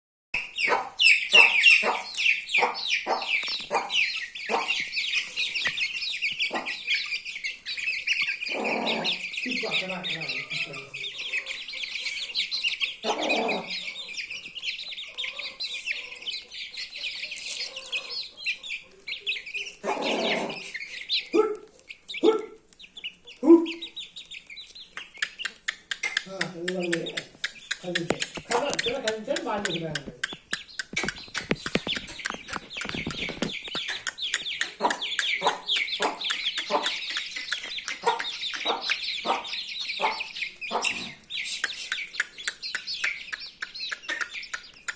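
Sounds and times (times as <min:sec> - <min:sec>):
chicken clucking: 0:00.4 - 0:44.9
chicks peeping: 0:00.4 - 0:44.9
rustling: 0:11.1 - 0:25.0, 0:30.2 - 0:38.8.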